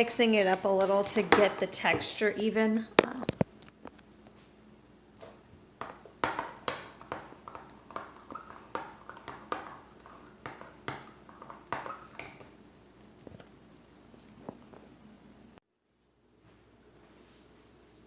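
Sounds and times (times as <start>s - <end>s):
spoon stirring in container: 5.2s - 14.8s.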